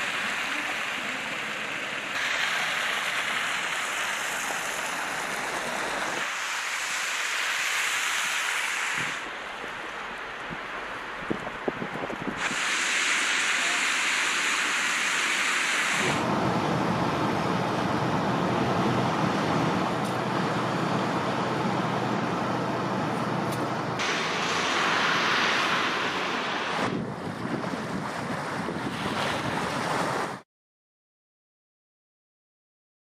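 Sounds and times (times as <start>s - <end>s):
blizzard wind buffeting microphone: 3.7s - 13.1s, 14.0s - 30.4s.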